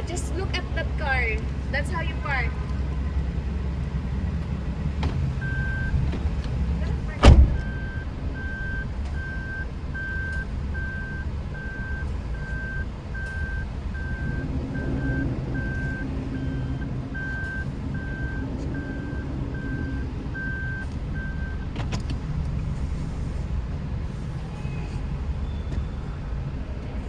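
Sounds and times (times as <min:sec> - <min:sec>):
car engine running: 0:00.0 - 0:27.0
reversing warning beeps: 0:05.4 - 0:06.0, 0:06.8 - 0:21.7.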